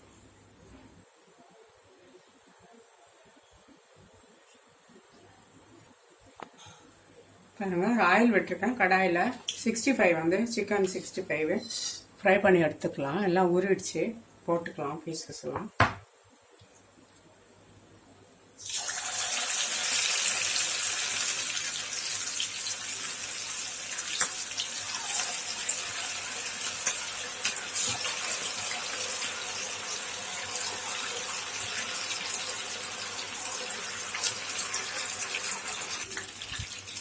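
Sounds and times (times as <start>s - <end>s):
chicken sizzling in hot oil: 18.6s - 37.0s.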